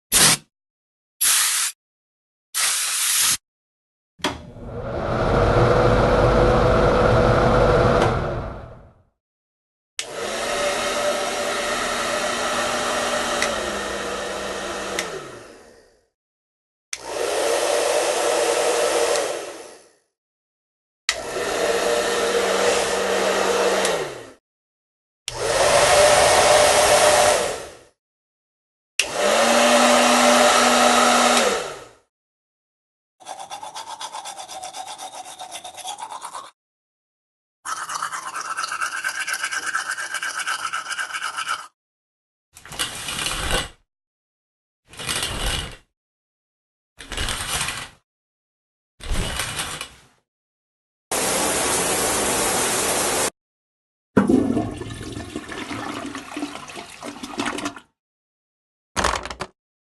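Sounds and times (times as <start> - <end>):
hair dryer running: 4.6 - 8.8, 10.0 - 15.8, 17.0 - 19.8, 21.1 - 24.4, 25.3 - 27.8, 29.0 - 31.9, 51.1 - 53.3
toothbrush scrubbing: 33.2 - 36.6, 37.7 - 41.7
toilet flushing: 51.2 - 53.3, 54.2 - 57.9.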